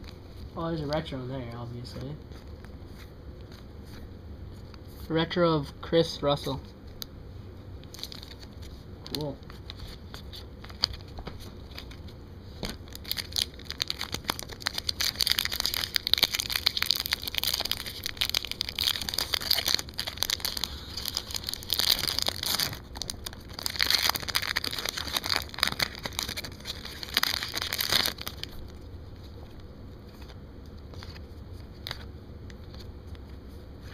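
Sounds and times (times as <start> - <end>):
card pack wrapper crinkling: 7.8 - 32.9.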